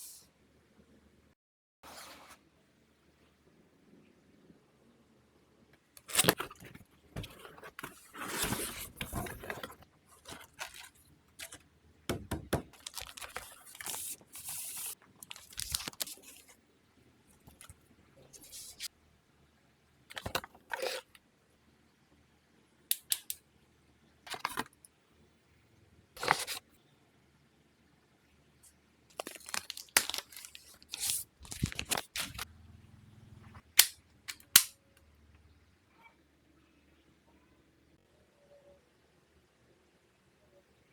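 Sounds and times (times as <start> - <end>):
packaging rustling and tearing: 6.0 - 11.6, 12.6 - 16.5, 29.1 - 32.5.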